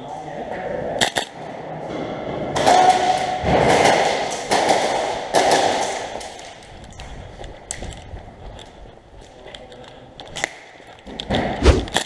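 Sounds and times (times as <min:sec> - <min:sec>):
clothing swishing: 0:11.6 - 0:11.9.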